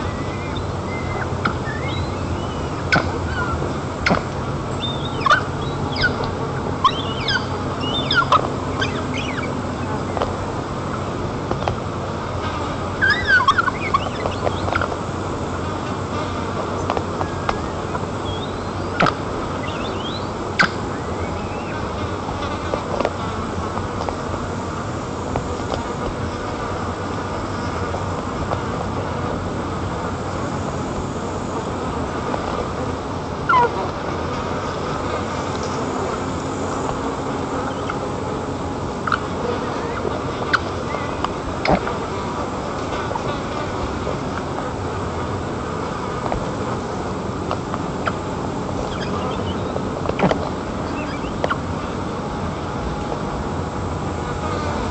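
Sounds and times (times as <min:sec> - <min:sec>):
eagle calling: 0:00.0 - 0:11.2, 0:13.0 - 0:15.0, 0:16.8 - 0:22.0, 0:33.4 - 0:33.9, 0:36.0 - 0:42.0, 0:48.0 - 0:51.7.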